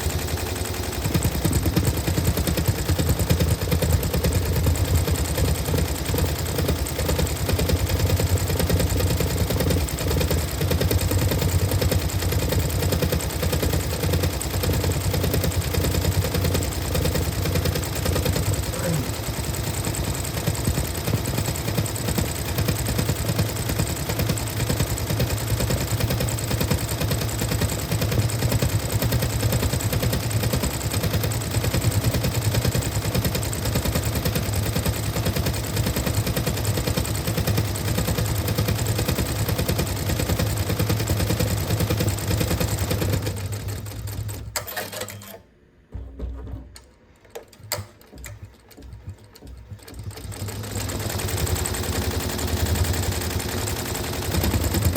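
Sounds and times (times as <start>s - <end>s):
sewing machine stitching: 0.0s - 54.9s.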